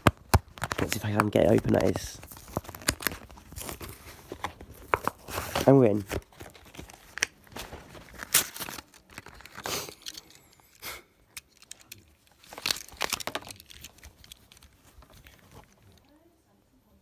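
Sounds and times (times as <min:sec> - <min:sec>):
packaging rustling and tearing: 0:00.0 - 0:16.2.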